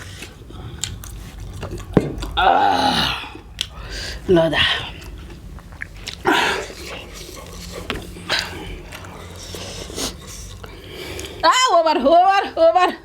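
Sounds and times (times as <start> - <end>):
person chewing food: 0.0 - 3.8, 4.8 - 11.4
noisy bursts of breath: 6.3 - 11.4.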